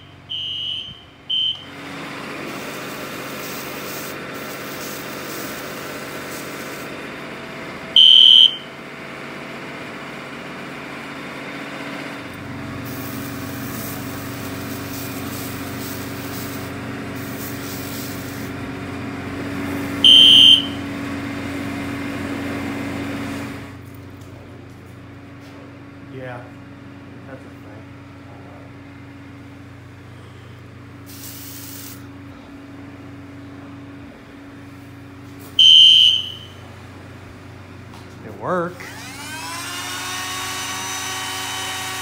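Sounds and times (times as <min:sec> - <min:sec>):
fire alarm electronic beeps: 0:00.0 - 0:01.7, 0:08.0 - 0:08.8, 0:20.0 - 0:20.9, 0:35.6 - 0:36.7
steady mechanical hum: 0:00.0 - 0:42.0.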